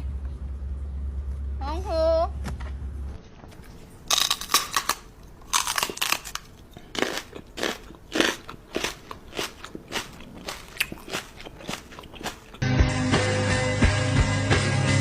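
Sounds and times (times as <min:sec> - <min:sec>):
crunchy chewing: 0:03.6 - 0:12.6.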